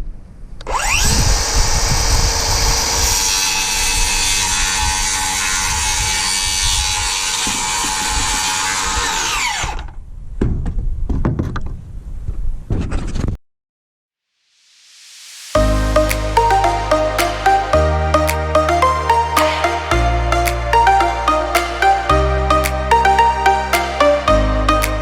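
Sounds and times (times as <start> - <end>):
cordless power tool motor: 0.7 - 3.8.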